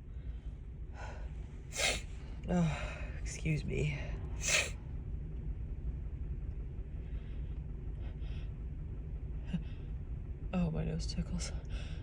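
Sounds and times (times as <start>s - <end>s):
woman breathing noisily: 0.0s - 3.3s, 7.0s - 8.8s, 11.6s - 12.0s
steady low rumble: 0.0s - 12.0s.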